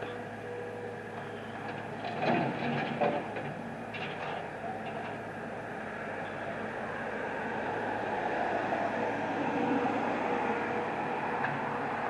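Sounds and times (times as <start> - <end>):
bulldozer engine running: 0.0 - 8.1.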